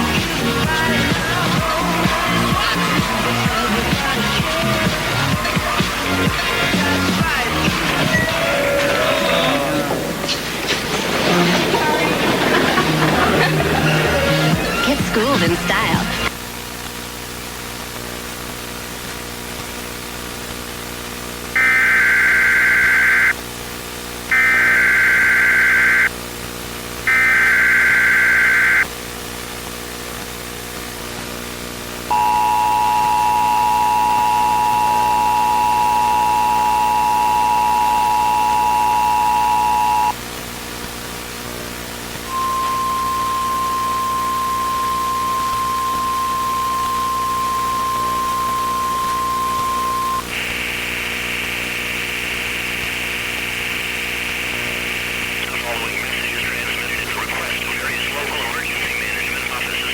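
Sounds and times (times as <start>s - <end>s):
steady single tone: 21.6s - 23.3s, 24.3s - 26.1s, 27.1s - 28.9s, 32.1s - 40.1s, 42.3s - 50.3s
two-tone attention signal: 21.6s - 23.3s, 24.3s - 26.1s, 27.1s - 28.9s, 32.1s - 40.1s, 42.3s - 50.3s
digital data tone bursts: 21.6s - 23.4s, 24.3s - 26.1s, 27.1s - 28.9s, 32.1s - 40.1s, 42.3s - 50.3s, 54.7s - 59.9s
low hum: 42.3s - 50.3s.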